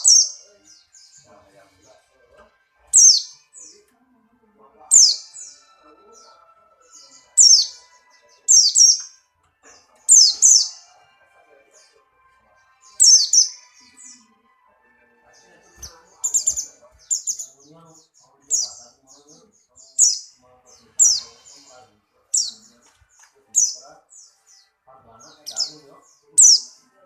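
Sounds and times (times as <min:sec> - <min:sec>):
bird singing high-pitched chirps: 0:00.0 - 0:01.3, 0:02.9 - 0:03.9, 0:04.9 - 0:09.3, 0:10.0 - 0:10.9, 0:12.7 - 0:14.2, 0:15.4 - 0:26.8.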